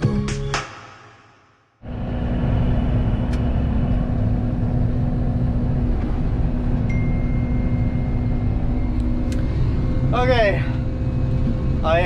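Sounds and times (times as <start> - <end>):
combine harvester rumbling: 1.8 - 12.0.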